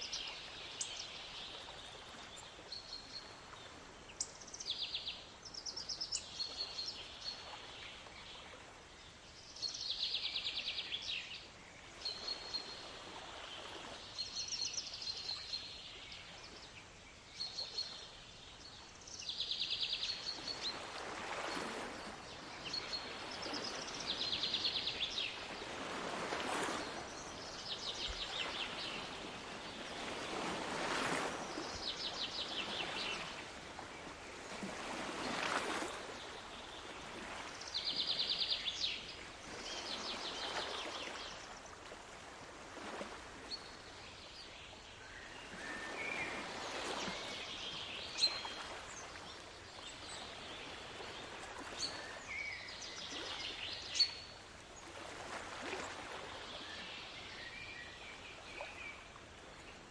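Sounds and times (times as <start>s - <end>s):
waves washing ashore: 20.1s - 44.7s, 45.4s - 57.3s.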